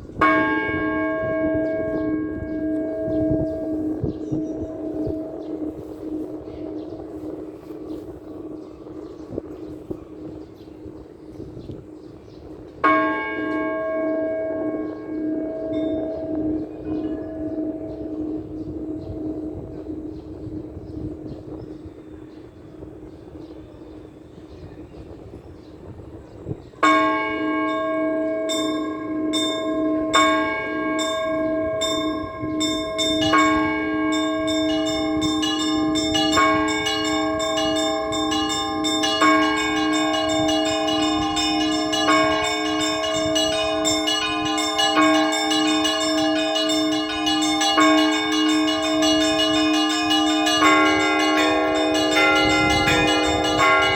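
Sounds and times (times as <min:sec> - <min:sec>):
low lingering hum: 0:00.0 - 0:13.0
church bells pealing: 0:00.0 - 0:24.0, 0:26.6 - 0:53.9.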